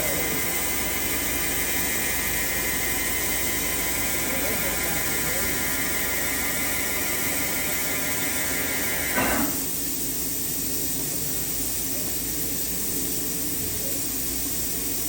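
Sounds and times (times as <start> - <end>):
high machine whine: 0.0 - 10.2
machining center hum and hiss: 0.0 - 15.0.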